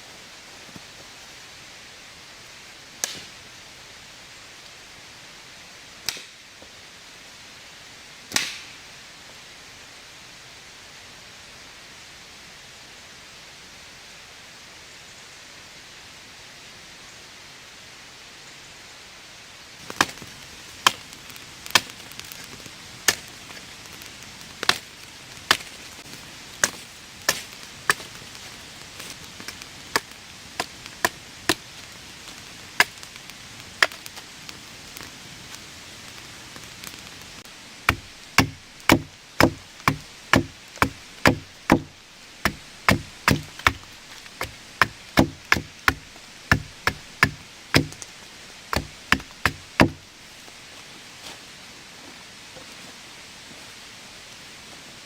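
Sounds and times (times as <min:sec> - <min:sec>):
axe chopping wood: 0:19.8 - 0:24.0, 0:24.6 - 0:25.8, 0:26.6 - 0:28.3, 0:29.0 - 0:31.6, 0:33.8 - 0:34.0, 0:37.9 - 0:50.0.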